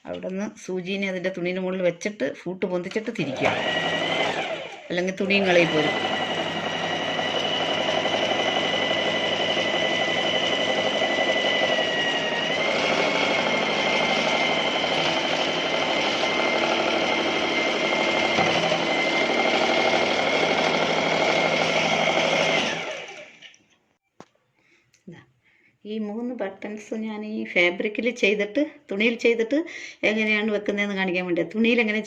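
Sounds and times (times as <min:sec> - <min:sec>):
sewing machine running: 0:03.2 - 0:23.5.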